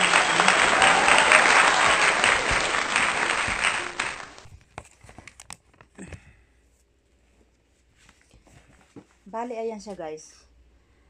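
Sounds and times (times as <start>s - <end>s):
loud applause: 0.0s - 4.5s.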